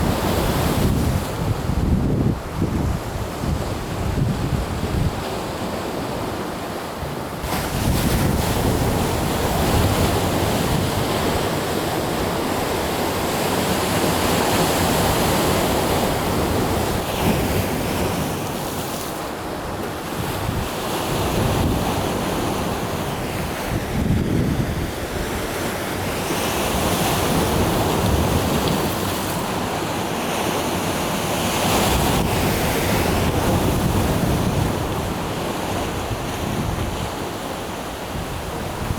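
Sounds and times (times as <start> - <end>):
wind buffeting microphone: 0.0 - 5.3, 7.4 - 11.6, 20.1 - 29.6, 31.6 - 38.9
surf breaking and washing in: 0.0 - 38.9.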